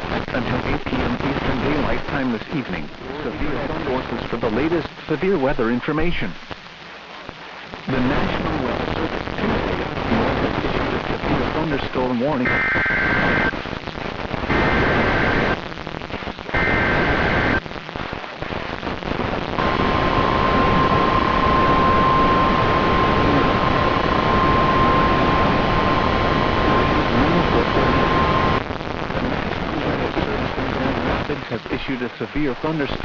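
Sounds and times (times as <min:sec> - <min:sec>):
steady hiss: 0:00.0 - 0:33.0
two-tone data bursts: 0:12.4 - 0:13.6, 0:16.6 - 0:17.6.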